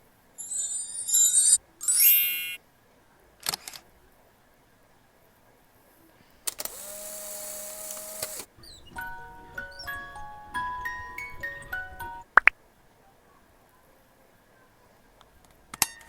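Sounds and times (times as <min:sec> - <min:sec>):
high chirping: 0:00.4 - 0:02.6
hiss with steady tone: 0:04.0 - 0:08.5.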